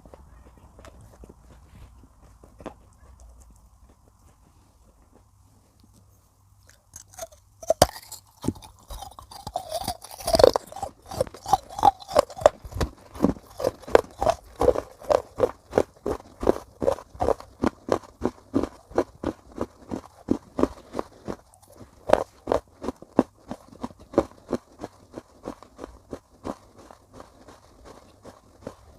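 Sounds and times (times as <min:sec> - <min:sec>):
crunchy chewing of clay: 0:00.0 - 0:28.9
sharp bite: 0:06.7 - 0:15.5.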